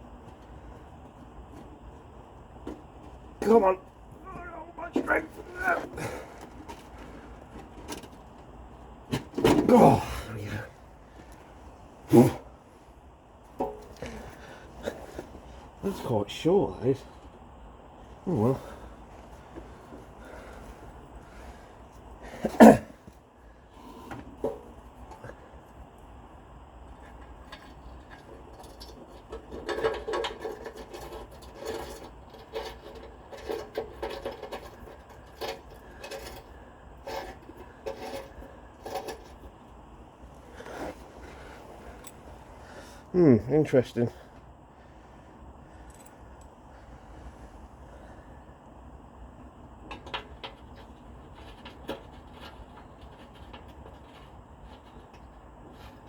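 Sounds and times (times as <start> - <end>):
faint low hum: 0.0 - 56.0
clicks and knocks from handling tools: 27.0 - 39.4, 49.8 - 56.0
metal scraping and rubbing: 28.1 - 39.5.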